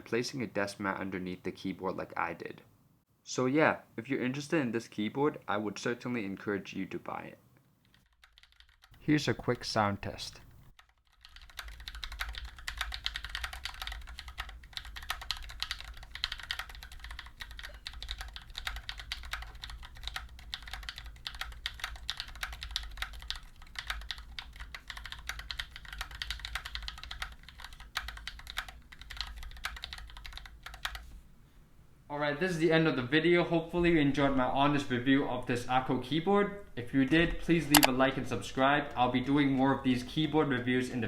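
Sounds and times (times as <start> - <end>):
mechanical keyboard typing: 7.9 - 9.6, 10.7 - 31.1.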